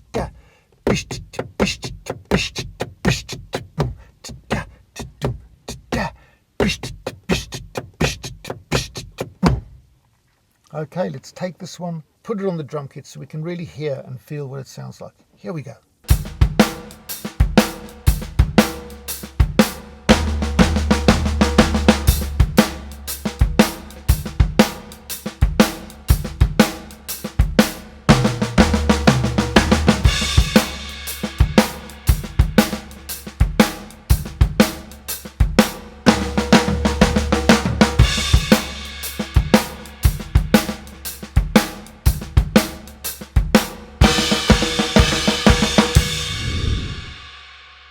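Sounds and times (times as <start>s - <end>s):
bass drum: 0.9s - 9.9s, 16.1s - 47.3s
kick drum thumps: 8.4s - 9.9s
snare drum flams: 9.2s - 9.8s, 16.1s - 47.3s
cymbal crashes: 44.1s - 47.9s.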